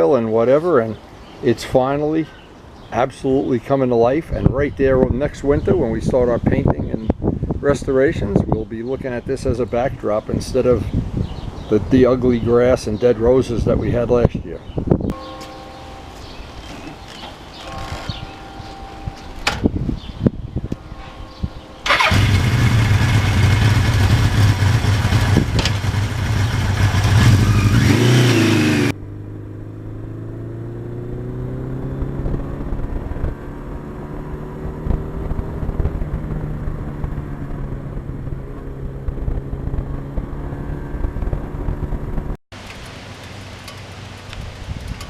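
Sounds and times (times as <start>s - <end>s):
wind noise: 4.2s - 15.2s, 16.3s - 28.8s, 31.0s - 42.4s, 44.2s - 45.0s
motorcycle engine running: 21.9s - 42.9s.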